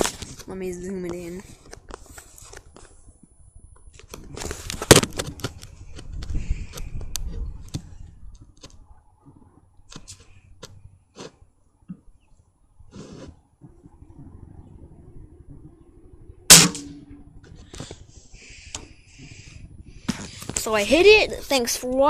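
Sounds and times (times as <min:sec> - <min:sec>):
low rumble: 0:13.6 - 0:21.0
pellet rifle crack: 0:16.5 - 0:17.0.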